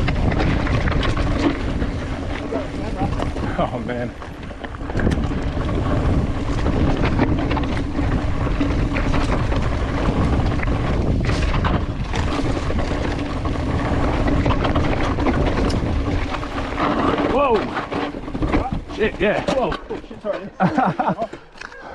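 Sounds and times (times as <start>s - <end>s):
wind rush over microphone: 0.0s - 20.0s
bike rattling over bumps: 0.0s - 21.6s.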